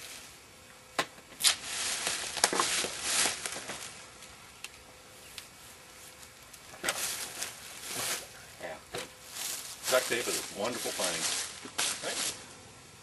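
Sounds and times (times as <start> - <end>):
duct tape pulled and torn: 1.3 - 1.6.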